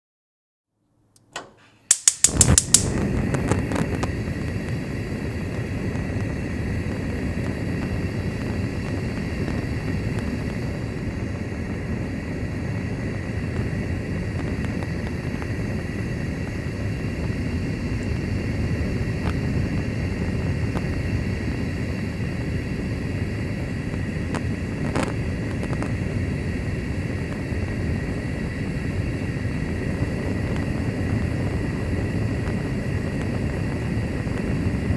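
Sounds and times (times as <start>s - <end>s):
gas igniter clicks: 1.2s - 3.3s
gas flame hissing: 1.2s - 34.9s.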